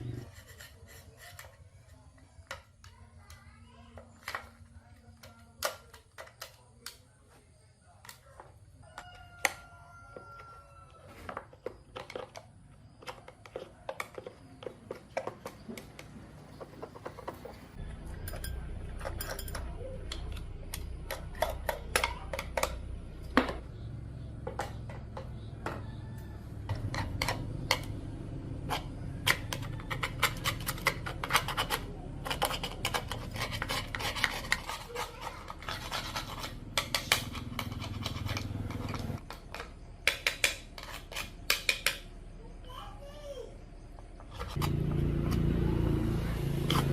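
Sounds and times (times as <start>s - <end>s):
metal tools clinking and scraping: 16.4s - 23.4s, 28.7s - 39.6s.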